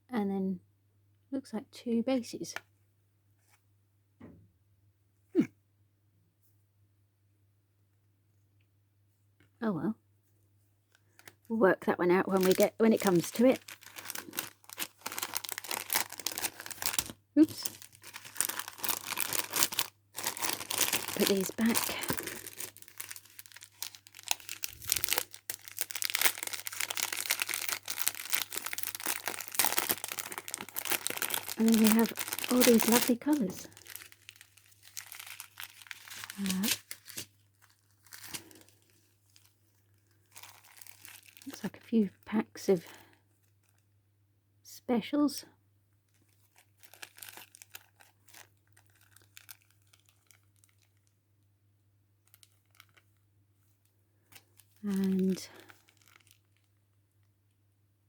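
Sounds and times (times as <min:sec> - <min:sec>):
plastic packaging crinkling: 0:12.2 - 0:41.9, 0:46.1 - 0:51.2, 0:52.2 - 0:53.2, 0:54.3 - 0:57.2.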